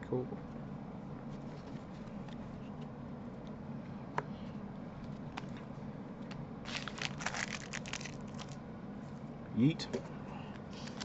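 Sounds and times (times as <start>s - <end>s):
foil wrapper crinkling: 6.6s - 8.6s.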